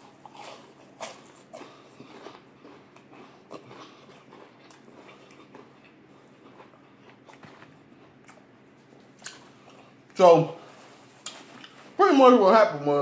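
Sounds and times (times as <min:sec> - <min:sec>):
person crunching fried chicken: 0:00.0 - 0:08.5
person chewing: 0:00.0 - 0:10.2, 0:11.0 - 0:12.0.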